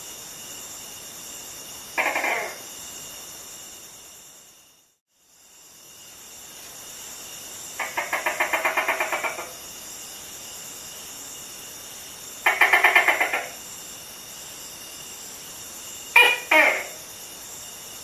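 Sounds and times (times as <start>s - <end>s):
high insect-like hiss: 0.0s - 18.0s.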